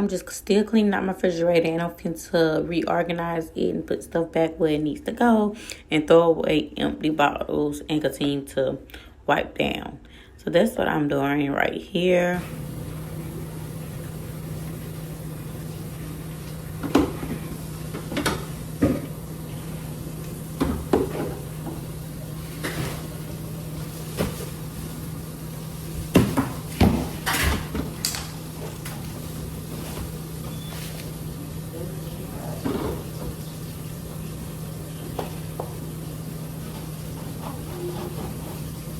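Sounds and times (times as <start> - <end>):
steady low hum: 12.4 - 38.9
containers and bottles clunking: 16.4 - 24.7, 26.0 - 29.2, 32.5 - 33.4.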